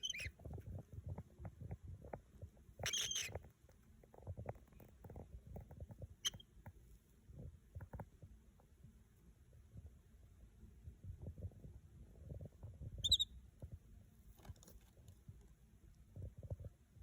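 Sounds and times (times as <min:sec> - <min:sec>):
cockatiel chirp: 0:00.0 - 0:00.3, 0:02.8 - 0:03.4, 0:06.2 - 0:06.4, 0:13.0 - 0:13.4
soft rustling and tapping: 0:00.1 - 0:08.9, 0:11.0 - 0:16.9.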